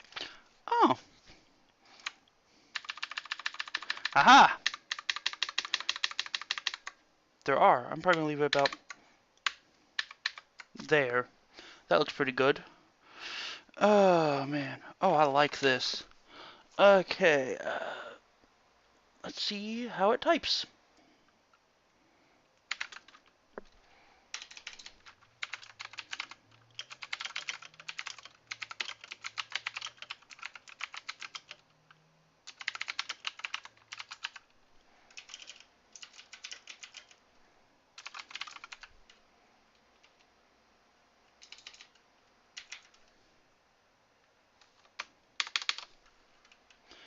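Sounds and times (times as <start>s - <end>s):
mechanical keyboard typing: 2.0s - 7.0s, 8.1s - 10.7s, 22.7s - 23.3s, 24.3s - 31.6s, 32.5s - 34.5s, 35.1s - 37.2s, 38.0s - 39.2s, 41.4s - 42.0s, 42.6s - 43.0s, 44.6s - 46.6s.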